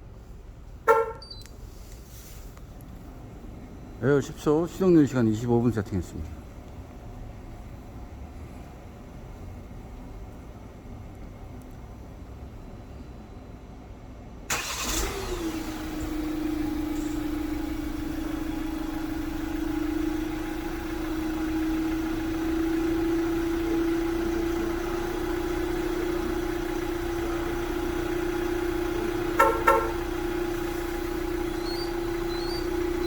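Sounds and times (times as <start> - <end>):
diesel engine starting and idling: 0.0 - 33.0
engine whine: 14.5 - 33.0
short chirps: 31.6 - 32.8.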